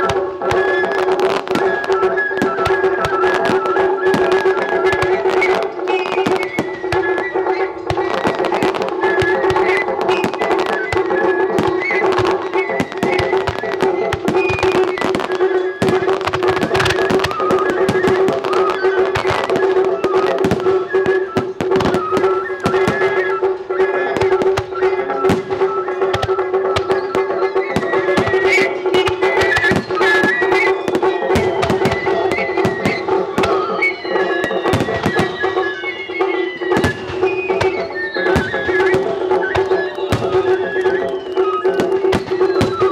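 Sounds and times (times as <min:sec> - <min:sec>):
falling firework whistles: 0:00.0 - 0:42.9
fireworks bursting and crackling: 0:00.0 - 0:42.9
flute-like melody over drone: 0:00.0 - 0:42.9
loud music with held tone: 0:00.0 - 0:42.9.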